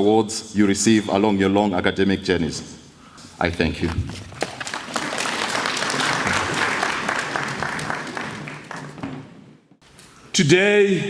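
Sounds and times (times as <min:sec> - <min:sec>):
audience applauding: 0:04.2 - 0:09.2.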